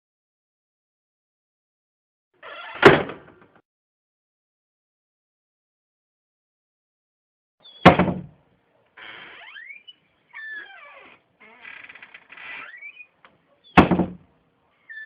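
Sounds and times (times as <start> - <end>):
door squeaking and creaking: 2.4 - 3.4, 9.0 - 14.2
door slamming shut: 2.6 - 3.5, 7.8 - 8.4, 13.8 - 14.2.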